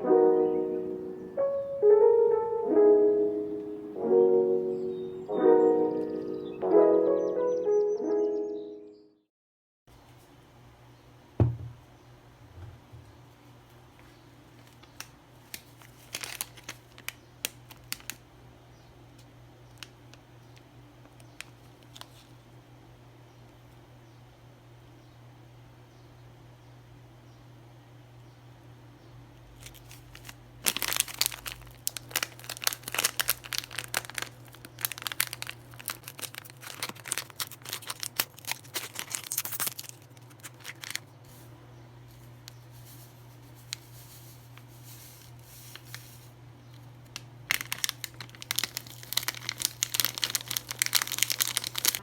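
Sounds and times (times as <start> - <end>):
crinkling and crackling: 13.3 - 18.2, 19.1 - 22.4, 29.6 - 52.0
steady low hum: 40.1 - 47.6.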